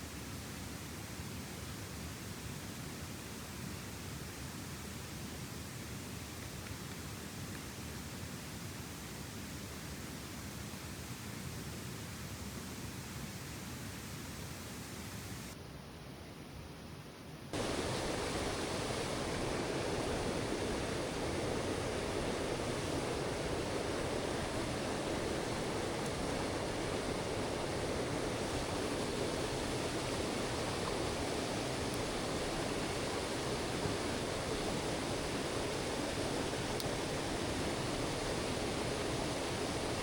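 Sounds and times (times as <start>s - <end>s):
stream water rushing over rocks: 17.6s - 40.0s.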